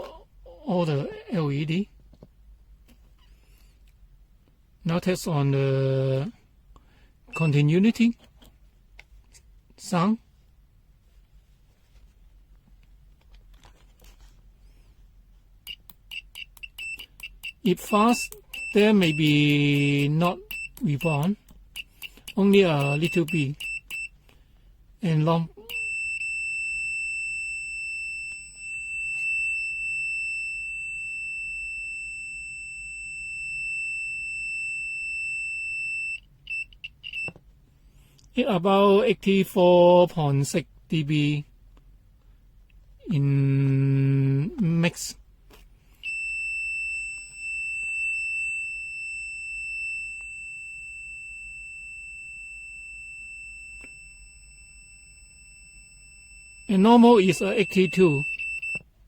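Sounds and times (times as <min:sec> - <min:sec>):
multimeter continuity beep: 0:07.4 - 0:07.6, 0:15.6 - 0:24.2, 0:25.6 - 0:37.4, 0:46.0 - 0:58.9.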